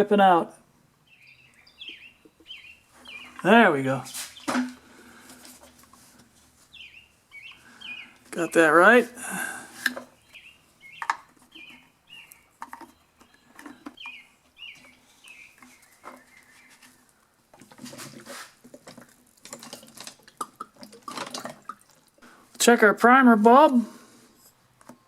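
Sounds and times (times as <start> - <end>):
small bird chirping: 1.0 - 4.6, 6.7 - 8.7, 10.1 - 17.2
small parts clicking and knocking: 18.6 - 21.9.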